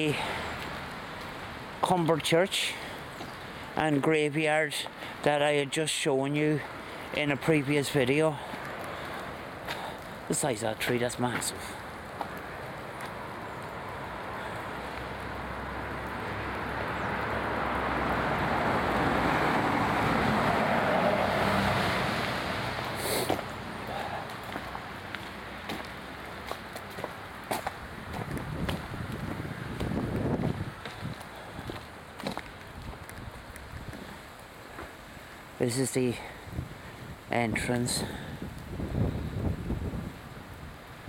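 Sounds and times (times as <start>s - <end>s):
footsteps: 7.1s - 15.1s, 21.4s - 35.0s
car passing by: 11.6s - 26.8s.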